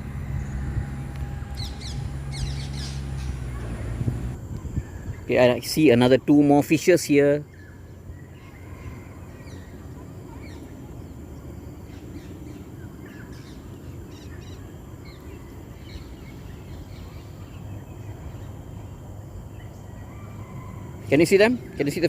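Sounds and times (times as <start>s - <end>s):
steady low rumble: 0.0s - 5.4s
birds chirping: 0.0s - 22.0s.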